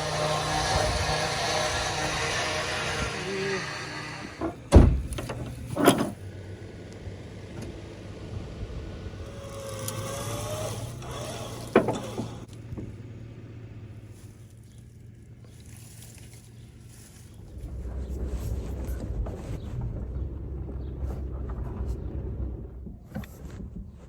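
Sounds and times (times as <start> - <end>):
mechanical knocks and clanks: 0.0 - 6.2, 9.3 - 13.0
low engine hum: 0.0 - 24.0.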